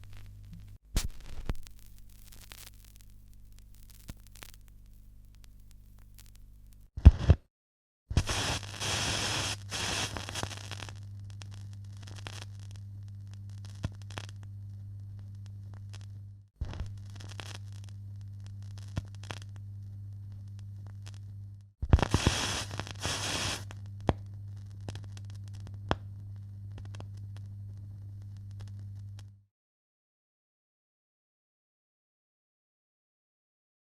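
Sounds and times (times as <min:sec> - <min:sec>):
low electrical hum: 0:00.0 - 0:06.9, 0:08.1 - 0:29.3
crackling clicks: 0:00.0 - 0:07.4, 0:08.1 - 0:29.3
static hiss bursts: 0:00.0 - 0:07.4, 0:08.1 - 0:12.6, 0:21.9 - 0:23.8.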